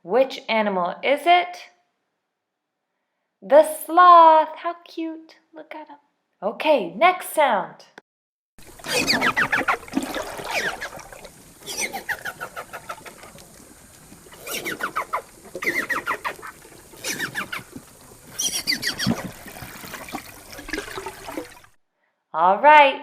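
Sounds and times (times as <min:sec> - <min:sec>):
dolphin clicking: 0:08.6 - 0:20.7
dolphin squeals: 0:08.8 - 0:13.4, 0:14.3 - 0:19.4.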